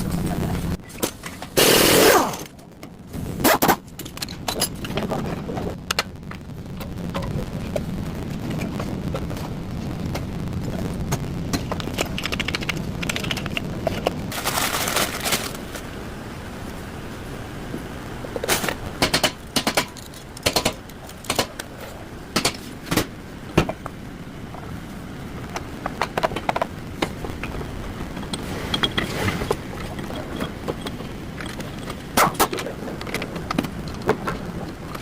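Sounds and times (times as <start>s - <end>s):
steady low hum: 0.0s - 35.0s
scattered clicks: 3.6s - 14.2s, 18.4s - 23.1s, 25.4s - 35.0s.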